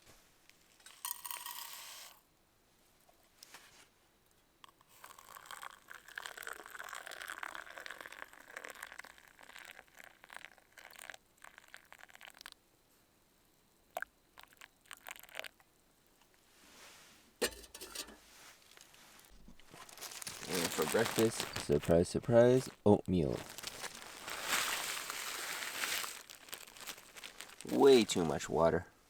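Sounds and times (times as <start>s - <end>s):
hot water pouring into a mug: 4.8s - 12.6s, 14.0s - 15.6s, 20.1s - 21.8s, 23.5s - 28.3s.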